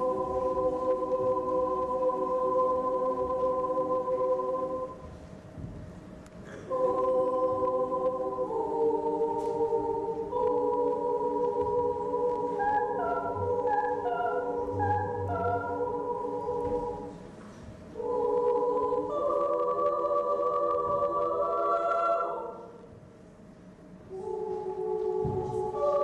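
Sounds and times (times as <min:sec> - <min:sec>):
children's choir singing chords: 0:00.0 - 0:05.2, 0:06.4 - 0:23.0, 0:24.0 - 0:26.0.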